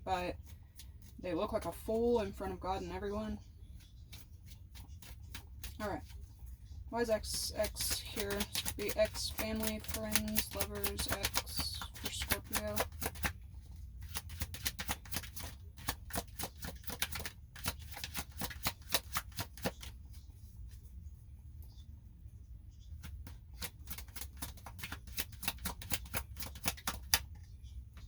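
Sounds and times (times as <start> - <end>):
cards being shuffled: 7.3 - 13.4, 14.0 - 20.0, 23.0 - 27.3.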